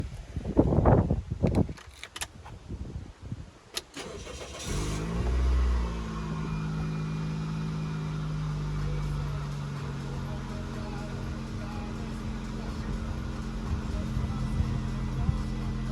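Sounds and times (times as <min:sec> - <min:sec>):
car engine starting and idling: 0:03.7 - 0:15.9.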